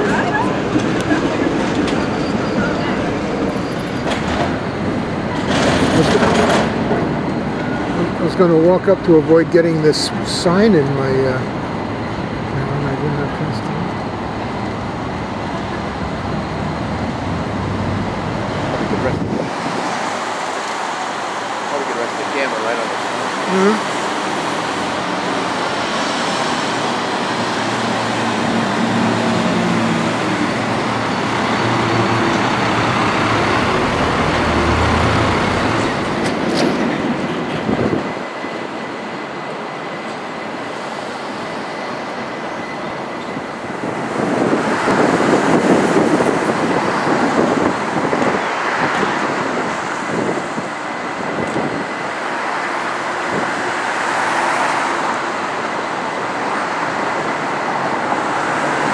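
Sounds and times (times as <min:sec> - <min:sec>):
rush of passing vehicles: 0:00.0 - 0:38.9, 0:40.6 - 0:58.9.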